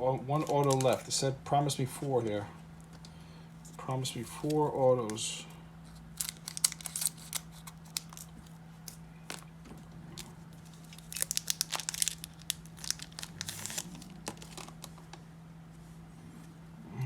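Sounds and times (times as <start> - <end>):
faint steady hum: 0.0 - 17.0
wrapper tearing and crinkling: 0.4 - 1.1, 6.1 - 9.5, 10.2 - 15.0.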